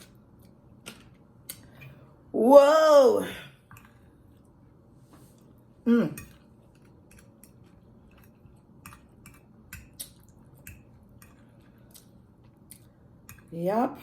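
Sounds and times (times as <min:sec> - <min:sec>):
chewing: 0:06.2 - 0:13.5.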